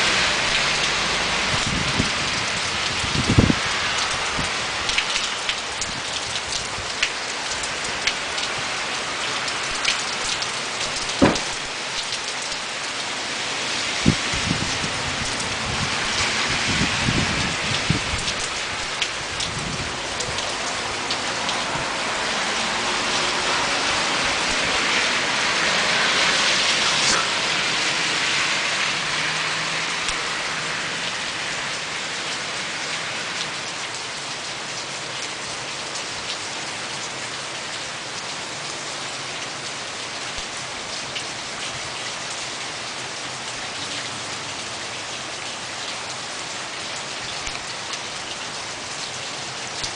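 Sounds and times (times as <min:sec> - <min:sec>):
heavy rain hissing: 0:00.0 - 0:35.2.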